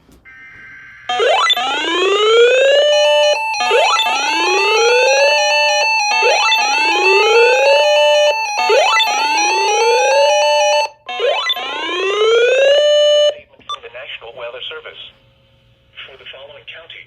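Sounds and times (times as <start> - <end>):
steady electronic tone: 0.3 - 10.9.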